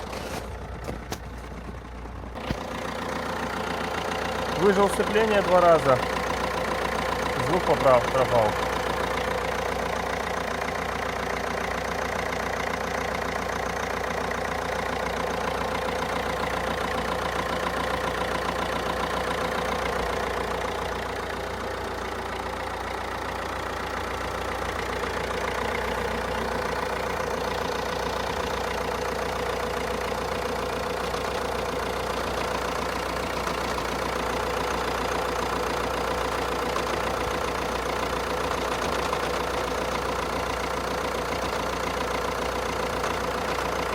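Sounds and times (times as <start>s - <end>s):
diesel engine idling: 0.0s - 43.9s.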